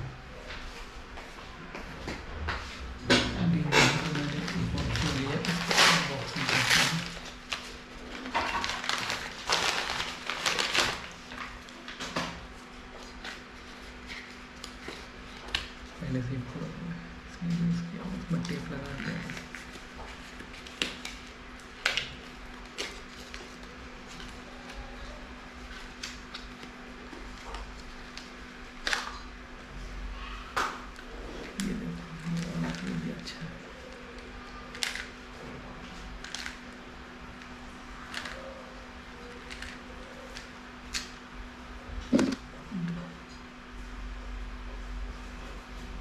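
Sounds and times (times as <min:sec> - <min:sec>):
steady low hum: 0:00.0 - 0:46.0
plastic scraping: 0:42.1 - 0:42.4.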